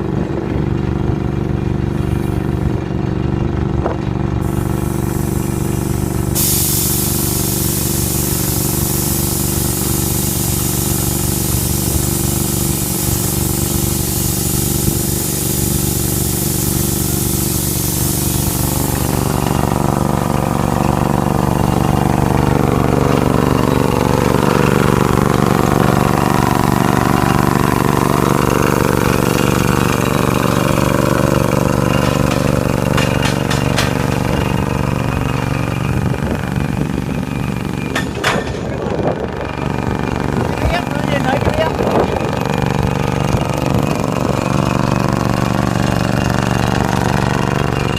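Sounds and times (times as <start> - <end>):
drilling rig engine drone: 0.0 - 47.9
loud hiss: 4.4 - 38.7.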